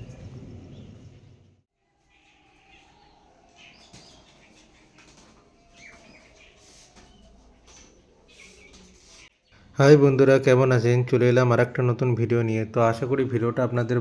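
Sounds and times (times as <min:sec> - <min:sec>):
chickens pecking and scratching: 0:01.8 - 0:09.5
chicken chirp: 0:01.9 - 0:09.6.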